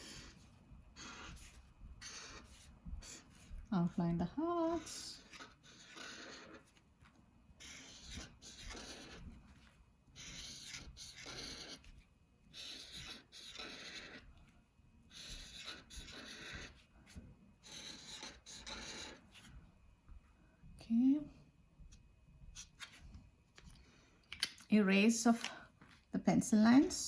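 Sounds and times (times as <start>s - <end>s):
marker drawing on paper: 0.0s - 14.4s, 15.1s - 19.5s.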